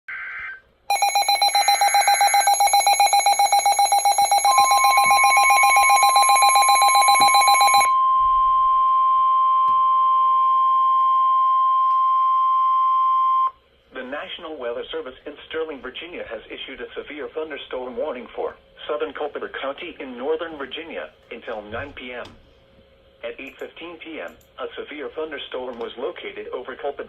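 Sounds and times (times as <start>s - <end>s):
shrill digital data bursts: 0.9s - 3.6s
rapidly pulsing alarm beep: 0.9s - 8.8s
steady warning alarm tone: 0.9s - 13.5s.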